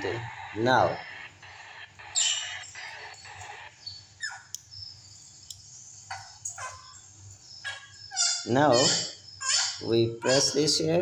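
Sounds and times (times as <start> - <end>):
sharp clicks: 0.0 - 3.8, 4.4 - 4.7.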